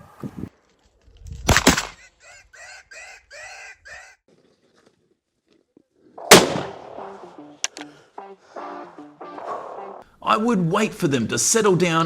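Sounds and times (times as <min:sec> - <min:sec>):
rifle shot with echo: 0:06.2 - 0:07.1.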